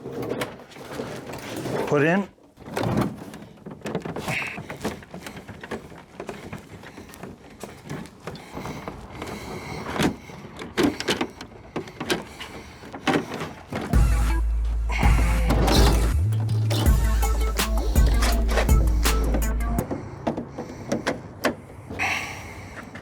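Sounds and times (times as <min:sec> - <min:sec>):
music: 0:14.0 - 0:19.8
air conditioner unit knocking and scraping: 0:15.0 - 0:21.8.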